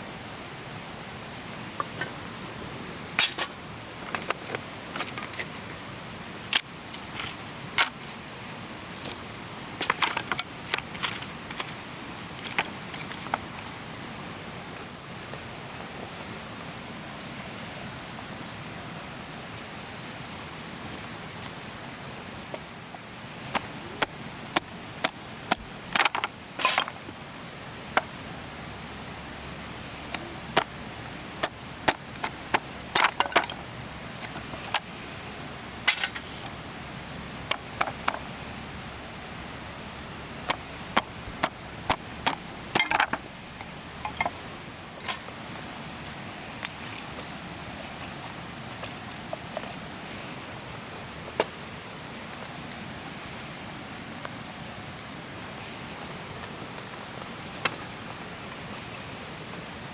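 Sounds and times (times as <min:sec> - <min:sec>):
steady background hiss: 0:00.0 - 0:59.9
sharp clicks and clinks: 0:35.9 - 0:36.3.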